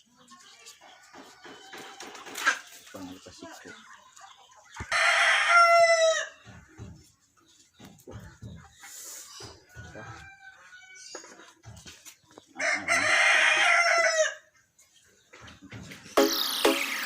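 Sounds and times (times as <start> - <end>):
chicken clucking: 0.0 - 16.2
rooster crowing: 12.6 - 14.4
music with steady beat: 16.1 - 17.0.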